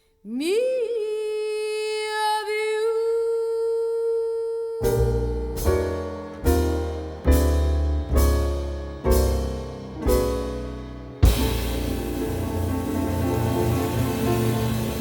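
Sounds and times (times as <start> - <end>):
piano chords: 4.8 - 15.0
band accompaniment: 11.2 - 15.0.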